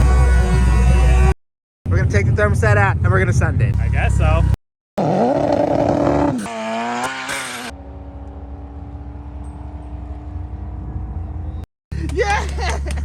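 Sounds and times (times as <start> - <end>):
turbocharged engine revving: 3.1 - 11.6.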